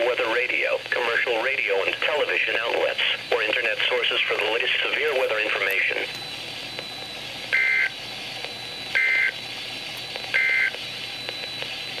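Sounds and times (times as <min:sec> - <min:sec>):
faint radio hiss: 0:00.0 - 0:06.2
two-tone digital data bursts: 0:06.9 - 0:09.5, 0:10.3 - 0:12.0.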